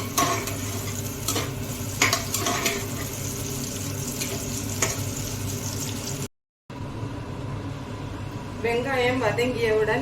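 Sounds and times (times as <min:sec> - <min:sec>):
food sizzling in oil: 0:00.0 - 0:06.3.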